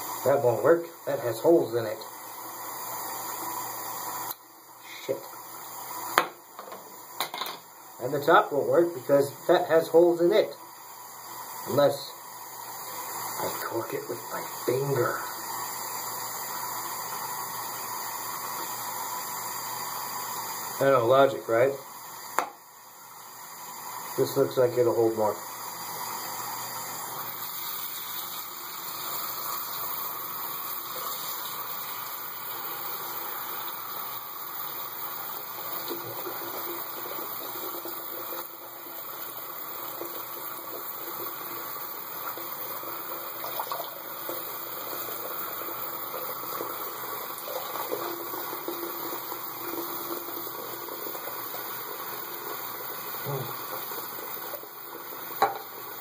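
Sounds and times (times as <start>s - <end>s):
tap running into sink: 6.1s - 7.7s, 22.3s - 22.6s, 55.2s - 55.8s.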